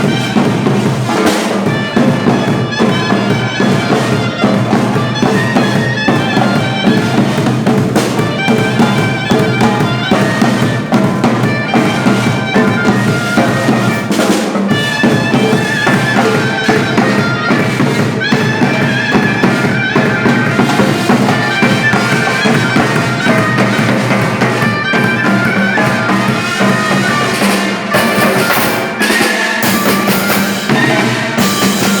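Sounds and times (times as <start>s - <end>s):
drums: 0.0s - 32.0s
reed wind instrument music: 0.0s - 32.0s.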